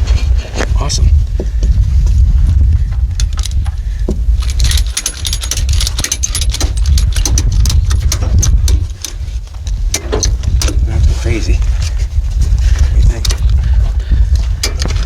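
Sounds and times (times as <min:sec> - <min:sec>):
steady low rumble: 0:00.0 - 0:15.0
sharp metallic clicks and clinks: 0:03.2 - 0:10.9.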